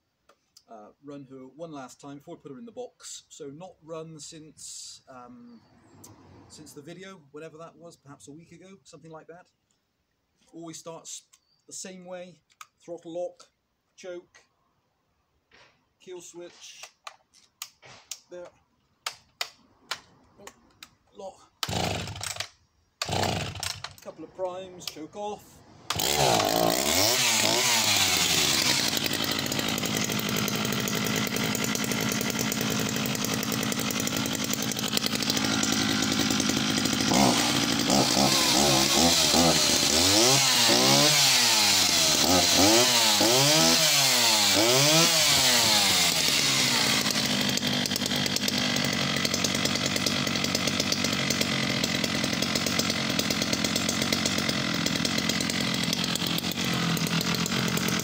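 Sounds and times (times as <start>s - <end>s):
chainsaw engine revving and idling: 21.6s - 58.0s.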